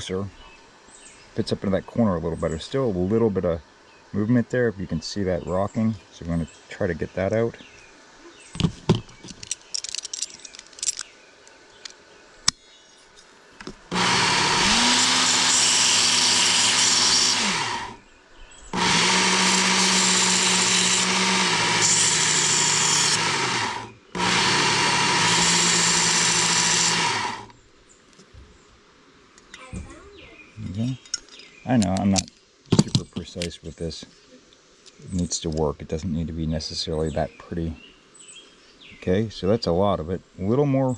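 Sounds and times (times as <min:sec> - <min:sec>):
belt sharpener grinding steel: 0:13.9 - 0:18.0, 0:18.7 - 0:27.5.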